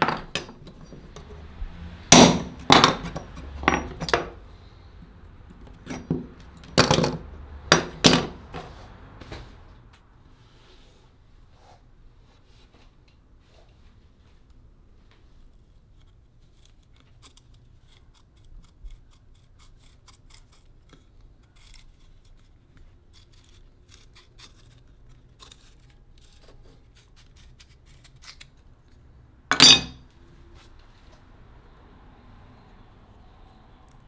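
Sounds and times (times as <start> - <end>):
metal hand tools clicking and tapping: 2.1 - 4.4.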